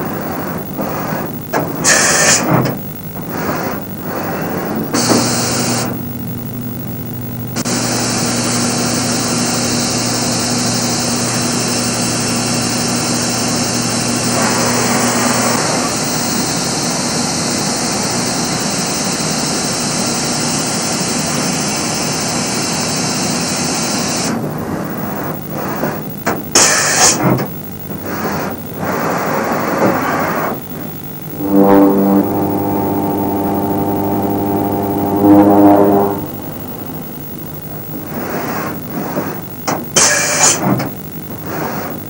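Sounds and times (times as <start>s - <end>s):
loud even hiss: 0.0s - 6.0s, 14.3s - 16.6s
machine motor hum: 0.0s - 22.6s, 29.8s - 42.0s.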